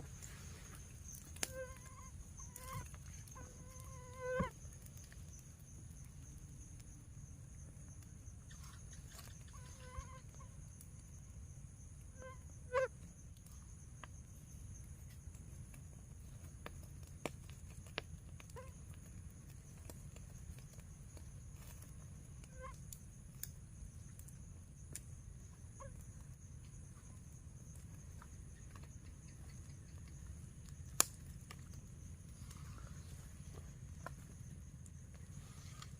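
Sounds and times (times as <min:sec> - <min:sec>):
faint honk-like animal calls: 0:09.4 - 0:10.5.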